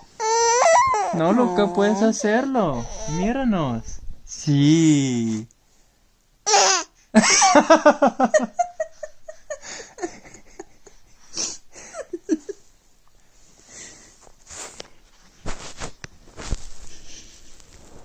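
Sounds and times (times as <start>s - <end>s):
people laughing: 7.2s - 12.6s.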